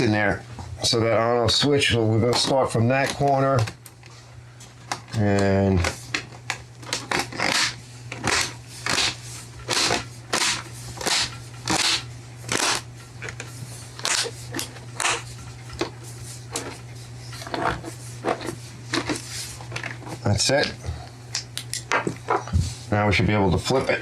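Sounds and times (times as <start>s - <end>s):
steady low hum: 0.0s - 24.0s
plastic clips snapping and creaking: 4.9s - 9.1s.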